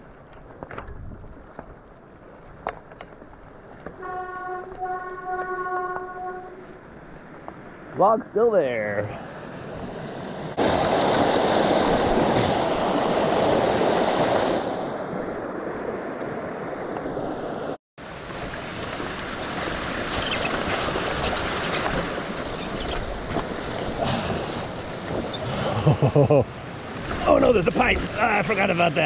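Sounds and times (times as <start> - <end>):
rushing creek water: 8.0 - 15.2, 16.6 - 29.0.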